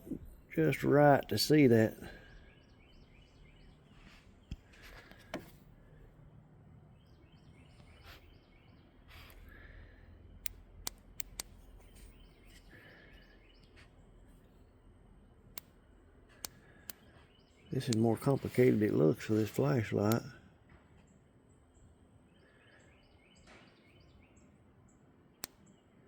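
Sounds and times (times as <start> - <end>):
distant bird singing: 0.0 - 26.0
sharp clicks: 10.4 - 13.9, 17.8 - 20.3, 25.4 - 25.6.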